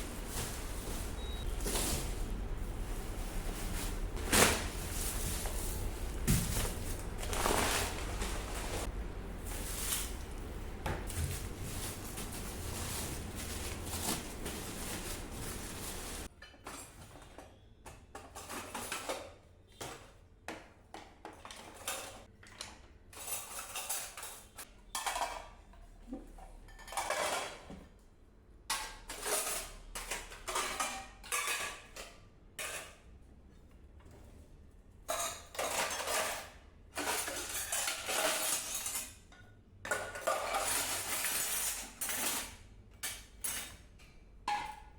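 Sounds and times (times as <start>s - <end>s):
dishes and cutlery clattering: 21.2s - 28.0s, 28.7s - 33.0s, 35.0s - 44.9s.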